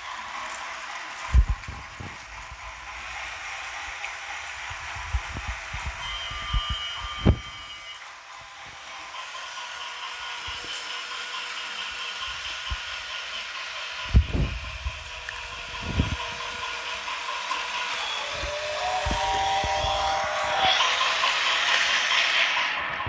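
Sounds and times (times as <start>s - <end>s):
toy train motor whirring: 0.0s - 23.0s
second tone: 5.8s - 8.0s.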